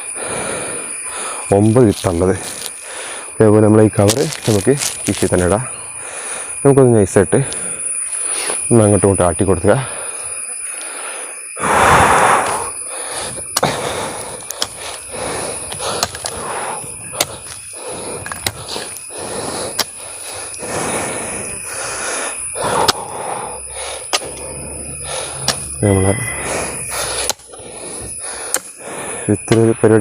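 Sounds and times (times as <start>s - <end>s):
high insect drone: 0.0s - 30.0s
seeds rustling onto soil: 4.0s - 5.5s.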